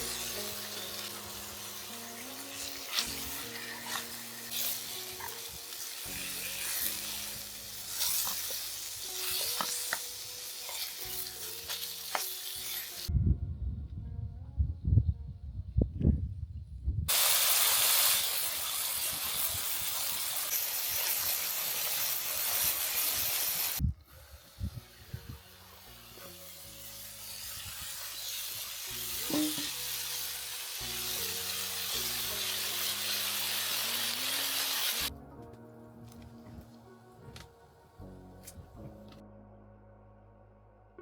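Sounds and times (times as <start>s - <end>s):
hissing sizzle of cooking: 0.0s - 13.1s, 17.1s - 35.1s
soft background music: 0.0s - 16.4s, 23.8s - 41.0s.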